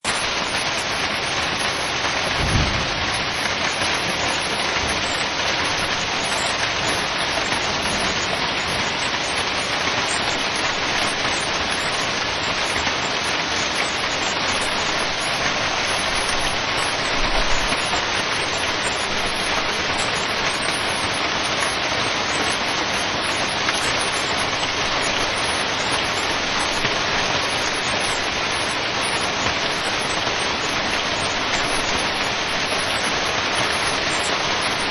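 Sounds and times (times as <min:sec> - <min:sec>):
hailstones striking surfaces: 0:01.6 - 0:05.1.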